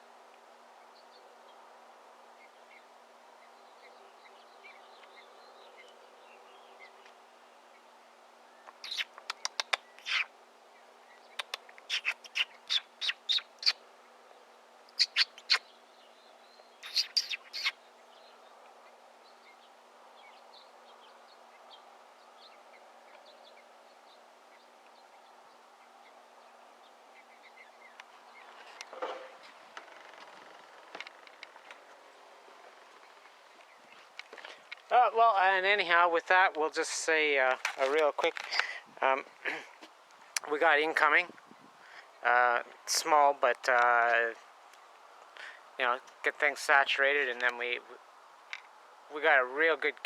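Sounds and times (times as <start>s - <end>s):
faint background birdsong: 0.0s - 50.0s
bird chirping close by: 2.4s - 36.0s.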